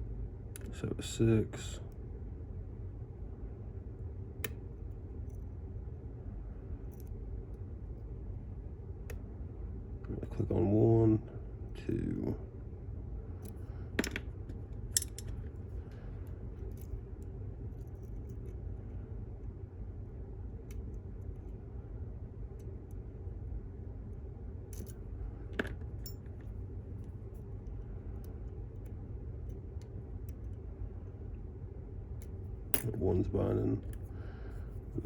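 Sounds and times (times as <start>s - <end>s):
steady low hum: 0.0s - 35.0s
metallic clicks of lock picking: 14.9s - 15.4s.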